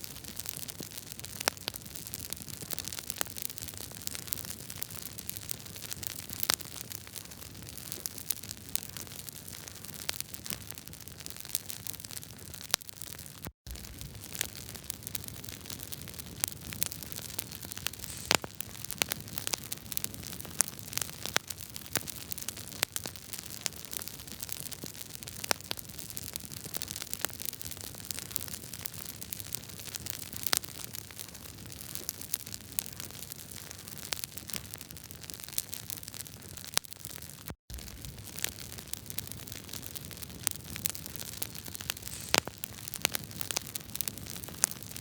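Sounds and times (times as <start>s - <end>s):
wood fire crackling: 13.7s - 45.0s.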